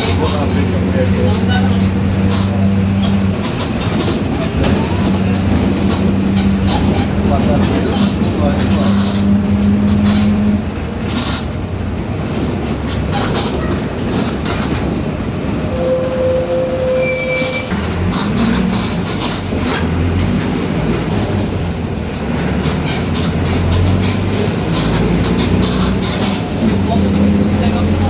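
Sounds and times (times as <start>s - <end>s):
body panels rattling: 0.0s - 10.5s
differential growling: 0.0s - 10.7s
bus diesel engine running: 0.0s - 28.0s.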